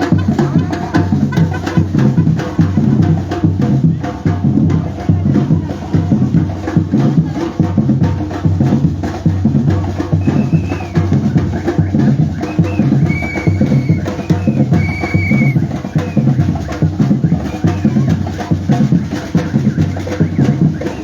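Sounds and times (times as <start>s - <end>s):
drum group playing fast rhythm: 0.0s - 21.0s.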